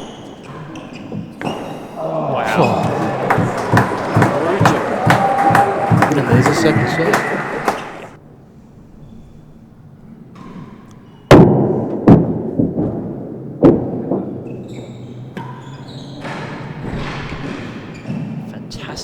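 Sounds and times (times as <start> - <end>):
tennis ball knocks echoing: 2.1 - 8.2.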